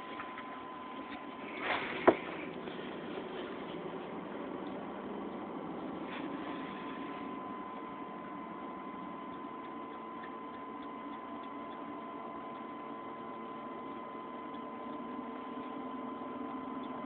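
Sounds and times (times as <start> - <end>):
high-pitched hum: 0.0 - 17.0
light ticks: 9.2 - 13.5.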